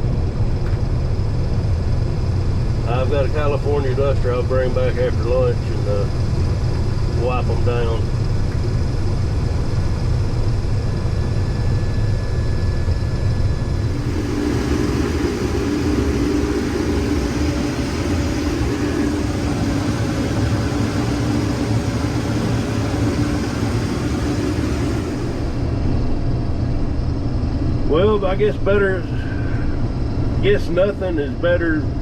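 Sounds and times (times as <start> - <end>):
combine engine drone: 0.0 - 32.0
higher hum: 13.6 - 26.3.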